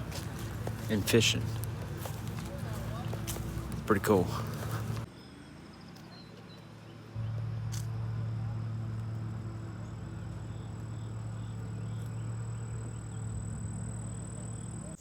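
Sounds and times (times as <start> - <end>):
motor humming: 7.2 - 15.0
high-pitched insect drone: 7.6 - 15.0.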